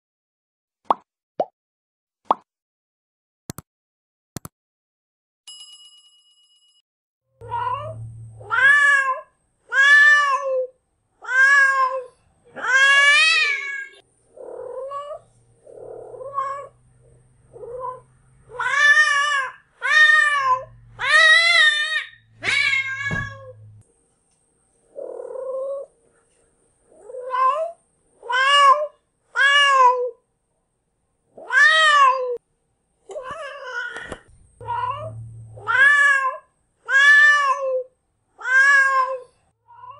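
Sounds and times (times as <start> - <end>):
cat yowling: 7.4 - 16.8, 17.5 - 23.6, 31.4 - 32.4, 33.2 - 39.9.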